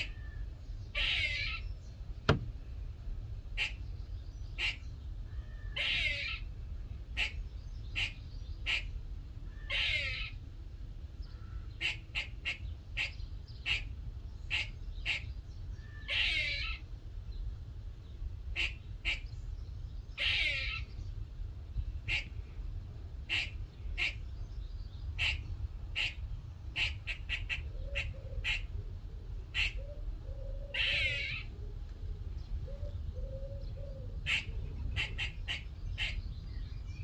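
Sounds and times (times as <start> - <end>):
squirrel chucking calls: 0.0 - 1.7, 3.5 - 3.9, 4.5 - 5.0, 5.6 - 6.5, 7.1 - 9.0, 9.6 - 10.4, 11.6 - 16.9, 18.5 - 19.4, 20.2 - 20.9, 21.9 - 22.4, 23.2 - 24.4, 25.1 - 36.6
squirrel rasping call: 0.0 - 2.4, 3.5 - 3.9, 4.5 - 6.5, 7.1 - 10.4, 11.3 - 16.9, 18.5 - 19.4, 20.2 - 21.0, 22.0 - 22.4, 23.2 - 24.3, 25.2 - 31.8, 32.7 - 36.4.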